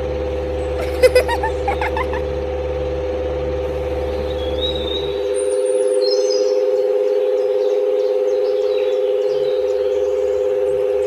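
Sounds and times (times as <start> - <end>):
birds chirping: 0.8 - 2.2.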